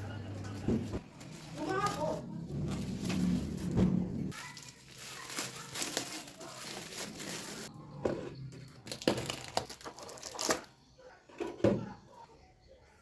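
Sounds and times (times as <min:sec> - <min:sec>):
plastic packaging crinkling: 0:01.1 - 0:07.7, 0:08.8 - 0:10.7.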